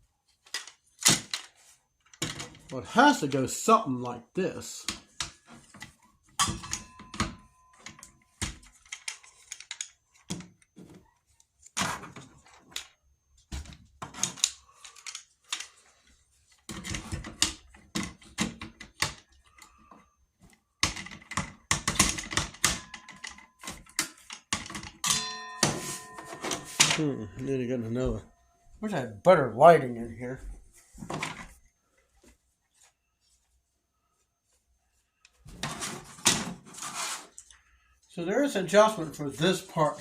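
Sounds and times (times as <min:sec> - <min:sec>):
table saw parts clicking and rattling: 0:00.4 - 0:02.7, 0:06.4 - 0:10.6, 0:14.0 - 0:15.8.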